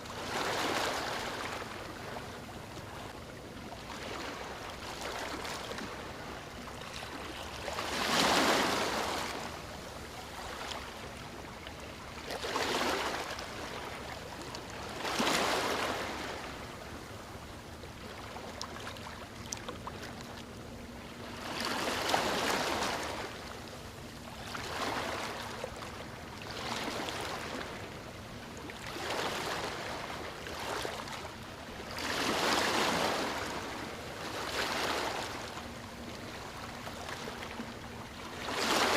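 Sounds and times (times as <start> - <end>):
waves breaking on beach: 0.0 - 1.9, 7.1 - 9.5, 12.3 - 13.8, 14.9 - 16.6, 31.9 - 35.5, 38.3 - 38.9.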